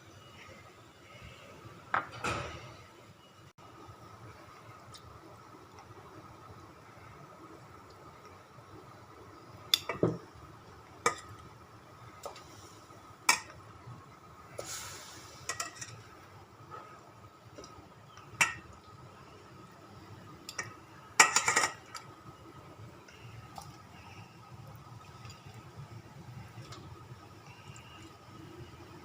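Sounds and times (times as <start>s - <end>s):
metal utensil clinking against pot: 20.5s - 21.8s.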